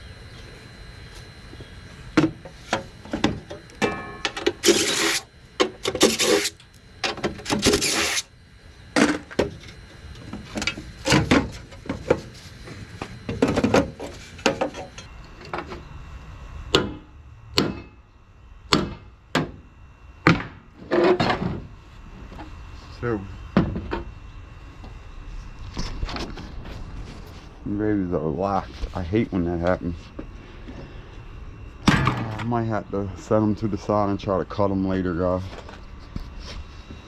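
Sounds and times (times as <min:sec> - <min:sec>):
rasping metal scrapes: 0:04.6 - 0:06.6, 0:07.6 - 0:08.3.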